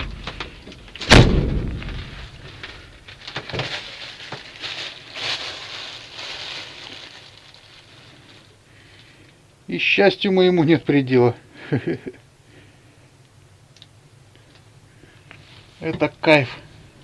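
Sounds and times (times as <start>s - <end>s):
rustling: 0.0s - 9.4s
door shutting with heavy thump: 1.0s - 2.3s.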